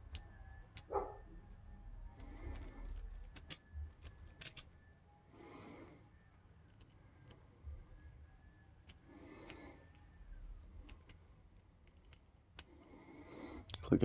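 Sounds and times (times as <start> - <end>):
lock pick clicking in padlock: 10.8 - 12.8.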